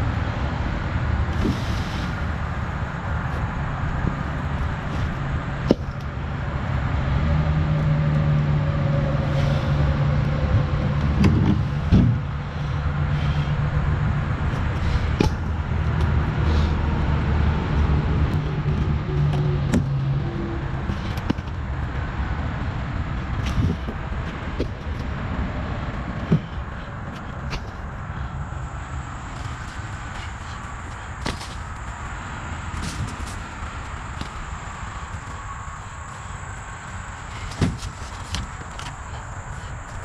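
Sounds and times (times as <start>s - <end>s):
knocks and clunks from trailer load: 3.2s - 6.2s, 10.5s - 12.5s, 14.2s - 16.9s, 20.8s - 28.0s, 37.2s - 40.0s.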